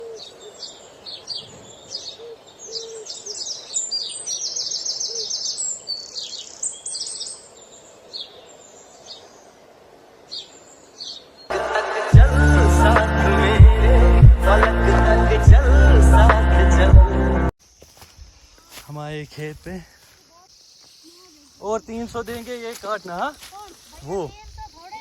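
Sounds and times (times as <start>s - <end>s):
bird trill: 0.0s - 7.5s
small birds chirping: 0.0s - 11.5s, 17.6s - 25.0s
loud music with bass beat: 11.6s - 17.5s.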